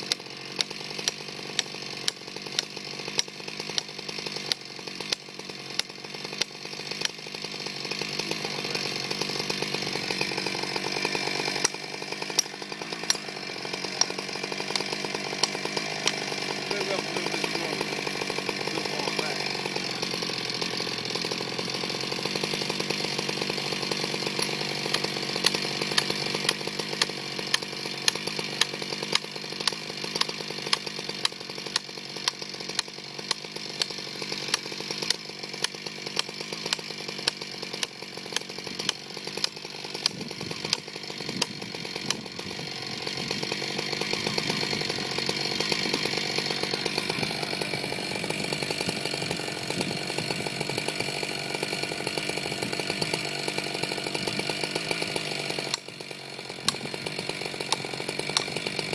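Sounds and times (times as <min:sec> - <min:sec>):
chainsaw cutting through tree: 0:00.0 - 0:58.9.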